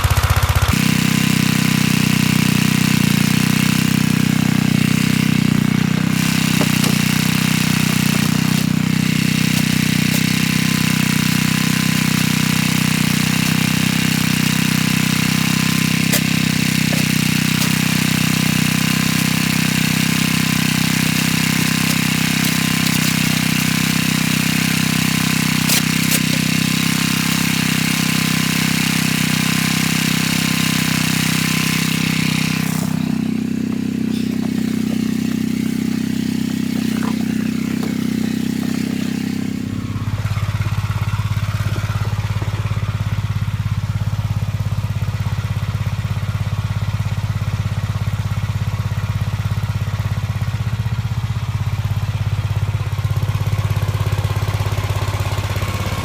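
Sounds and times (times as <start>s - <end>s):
single-cylinder engine running: 0.0s - 56.0s.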